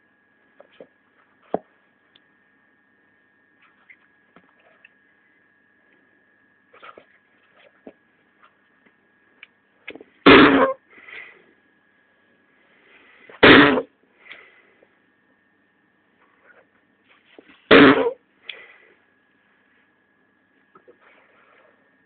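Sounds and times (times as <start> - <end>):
whoopee cushion fart noise: 10.3 - 10.8, 13.4 - 13.9, 17.7 - 18.2.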